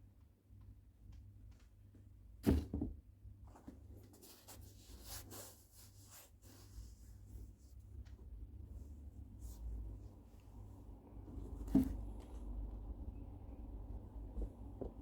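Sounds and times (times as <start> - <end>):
thump: 2.4 - 3.0.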